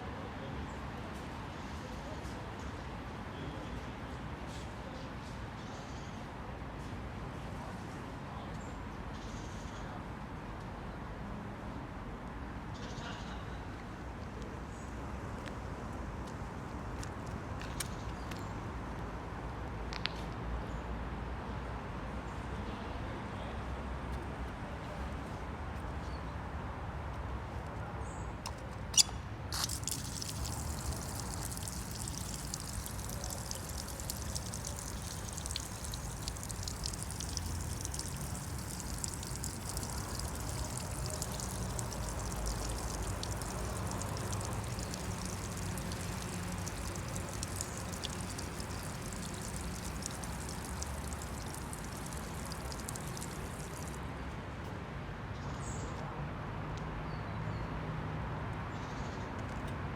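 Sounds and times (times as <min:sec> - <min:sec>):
water trickling and splashing: 0:29.5 - 0:54.1.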